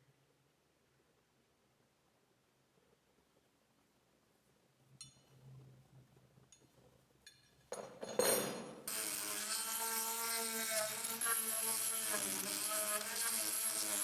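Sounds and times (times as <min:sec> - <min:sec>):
light metal clinks: 0:05.0 - 0:05.4, 0:06.5 - 0:08.6
electric power tool buzzing: 0:08.9 - 0:14.0.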